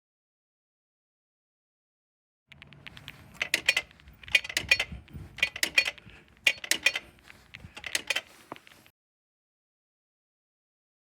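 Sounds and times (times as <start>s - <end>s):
metallic clicking: 2.5s - 8.9s.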